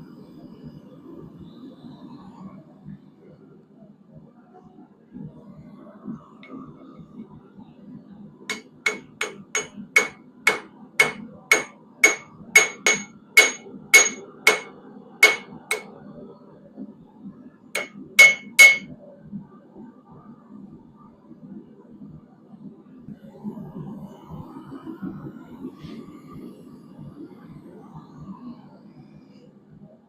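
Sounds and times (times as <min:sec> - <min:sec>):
hammer striking steel on anvil: 0:08.5 - 0:15.9, 0:17.8 - 0:18.9.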